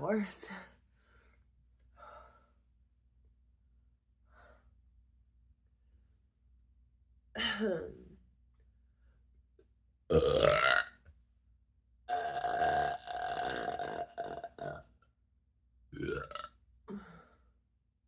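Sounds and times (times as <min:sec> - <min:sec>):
person burping: 0:10.1 - 0:10.9, 0:12.1 - 0:14.8, 0:15.9 - 0:17.1.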